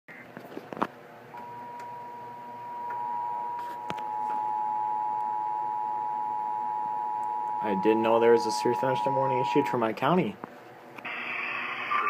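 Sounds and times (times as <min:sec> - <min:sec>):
two-tone alarm signal: 0:01.4 - 0:09.8.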